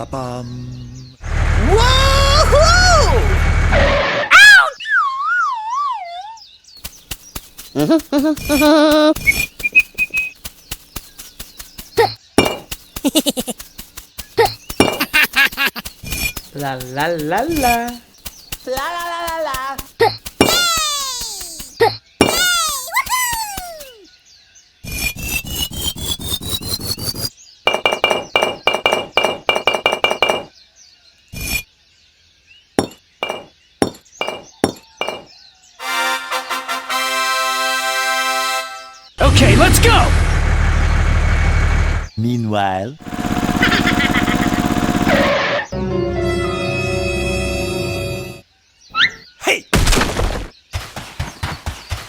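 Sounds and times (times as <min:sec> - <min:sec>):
short squeaky calls: 0:13.6 - 0:24.1, 0:48.9 - 0:49.4.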